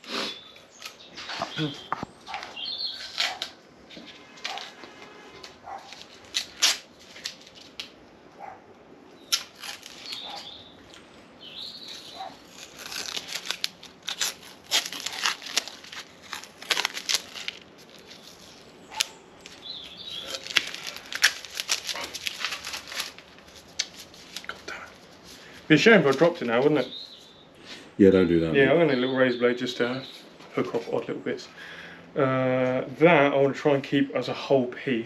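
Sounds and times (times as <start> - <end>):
masking tape peeling and tearing: 0.0 - 8.0, 9.2 - 10.6, 11.6 - 25.2.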